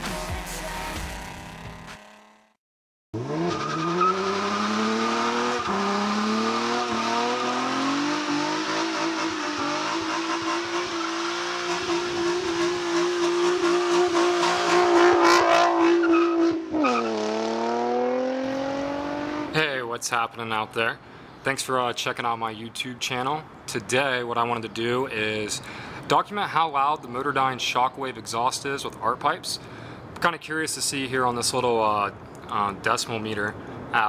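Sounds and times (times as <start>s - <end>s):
car engine revving: 3.2s - 19.6s.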